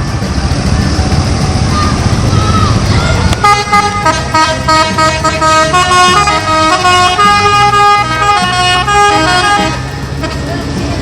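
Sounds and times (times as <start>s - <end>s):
musical air horns playing tune: 3.4s - 10.6s.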